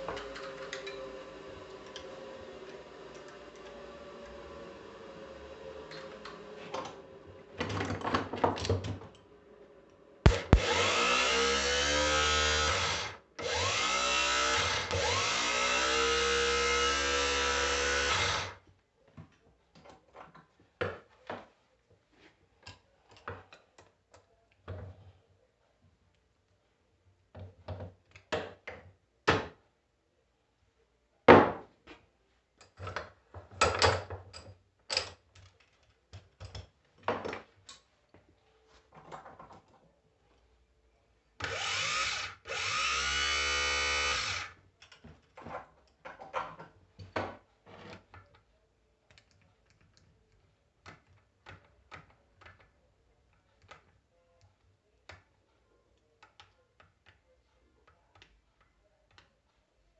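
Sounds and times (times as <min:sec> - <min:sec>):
electric drill running: 0:10.3 - 0:18.6, 0:41.4 - 0:44.6.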